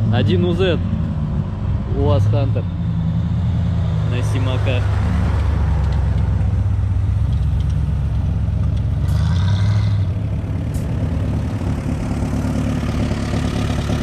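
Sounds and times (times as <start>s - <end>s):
car engine idling: 10.0s - 14.0s.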